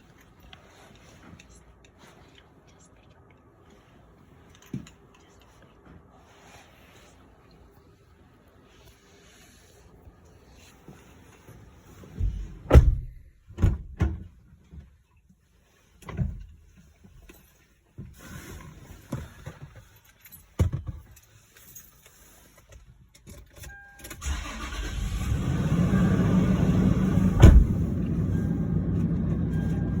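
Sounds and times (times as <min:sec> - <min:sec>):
loud thump: 0:27.3 - 0:27.8.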